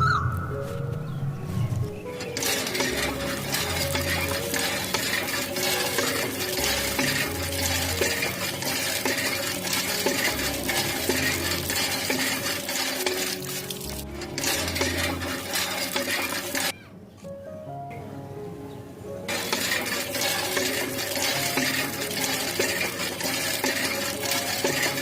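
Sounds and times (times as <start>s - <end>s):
background music with deep bass: 13.2s - 15.5s.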